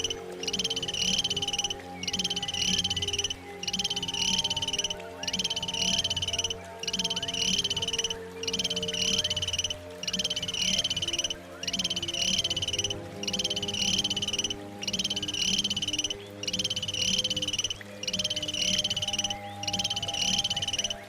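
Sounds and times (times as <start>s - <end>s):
animal call pulsing trills: 0.0s - 21.0s.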